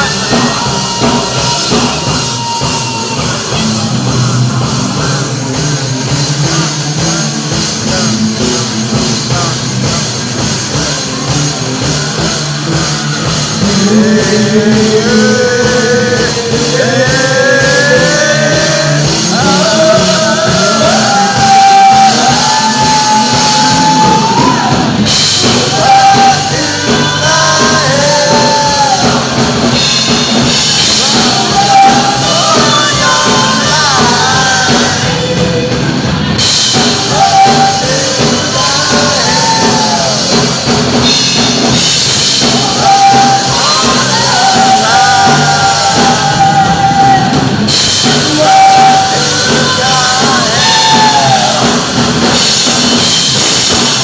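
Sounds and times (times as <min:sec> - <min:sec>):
rock band playing: 0:00.0 - 0:54.0
lead singer singing high notes: 0:13.1 - 0:29.8, 0:30.4 - 0:41.1, 0:42.3 - 0:53.2.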